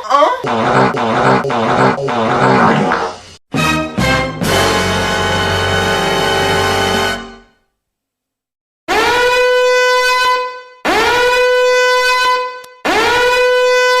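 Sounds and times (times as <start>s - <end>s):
brassy horn blasts: 3.6s - 7.5s.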